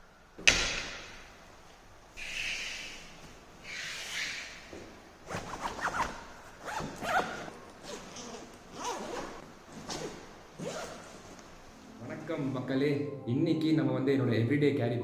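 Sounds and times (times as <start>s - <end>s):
backpack zipper pulled: 5.4s - 11.2s.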